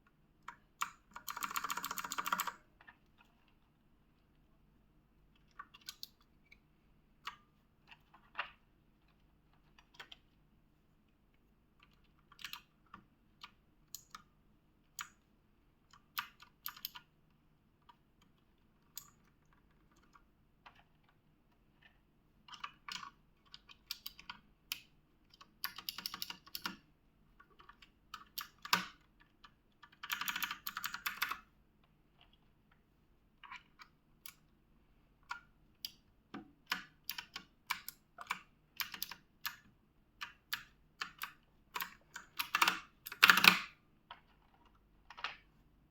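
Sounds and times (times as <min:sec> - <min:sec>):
mechanical keyboard keys clicking: 0:00.5 - 0:02.6, 0:16.1 - 0:17.1, 0:22.5 - 0:26.8, 0:29.8 - 0:31.4, 0:36.7 - 0:39.6, 0:40.2 - 0:43.8.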